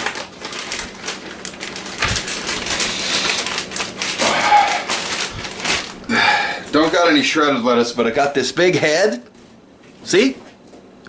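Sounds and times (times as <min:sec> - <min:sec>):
lettuce rustling and crackling: 0:00.0 - 0:07.4.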